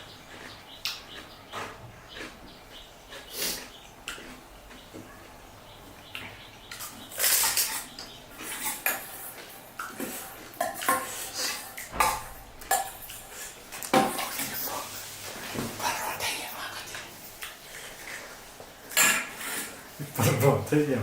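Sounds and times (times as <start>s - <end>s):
dishes and utensils clinking: 6.8s - 15.8s, 18.9s - 20.5s.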